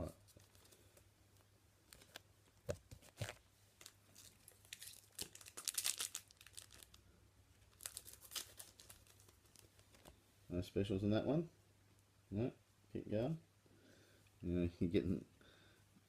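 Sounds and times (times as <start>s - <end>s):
foil wrapper crinkling and tearing: 3.1s - 7.0s, 7.6s - 10.1s.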